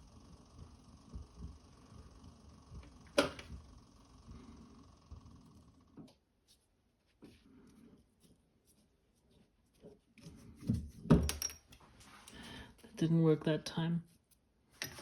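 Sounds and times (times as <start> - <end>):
lathe motor hum with whine: 0.0 - 6.1.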